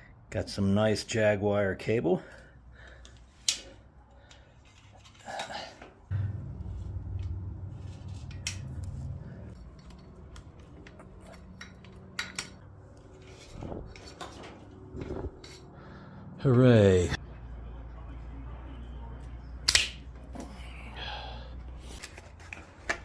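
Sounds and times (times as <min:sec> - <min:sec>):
bicycle cable clicking and rattling: 0:03.0 - 0:15.6.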